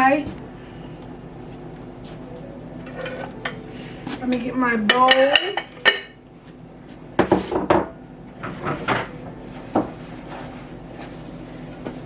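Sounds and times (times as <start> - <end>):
dishes and utensils clattering: 2.8 - 3.7, 4.8 - 6.2.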